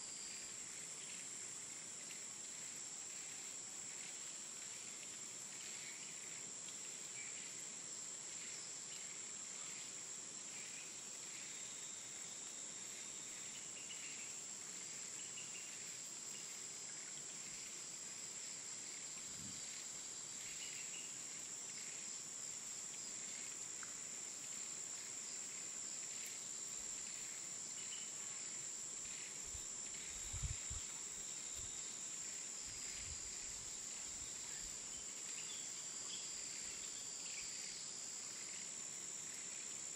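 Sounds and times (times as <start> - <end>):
high-pitched insect drone: 26.2 - 38.7.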